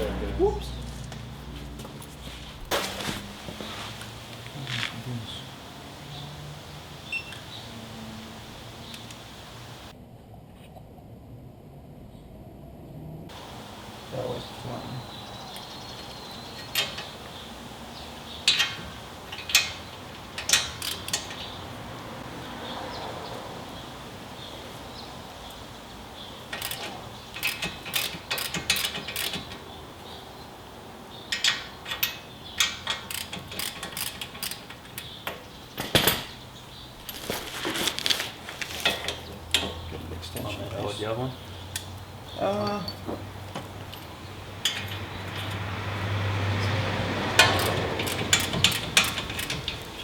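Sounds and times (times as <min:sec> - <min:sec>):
tools and metal parts clinking: 0:18.4 - 0:21.6, 0:26.5 - 0:29.6, 0:31.3 - 0:36.4, 0:37.0 - 0:40.5, 0:43.8 - 0:45.7, 0:47.4 - 0:50.0.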